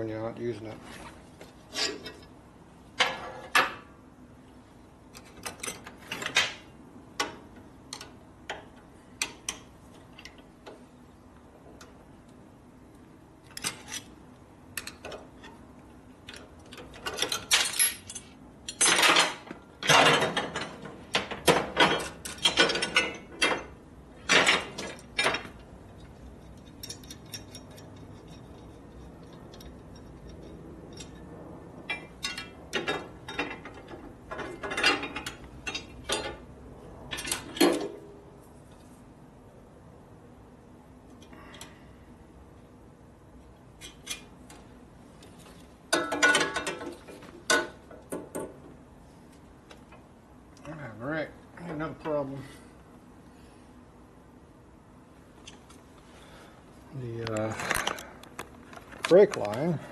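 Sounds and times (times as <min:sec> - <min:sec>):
metal hardware clinking: 0:16.2 - 0:36.5, 0:45.9 - 0:48.5.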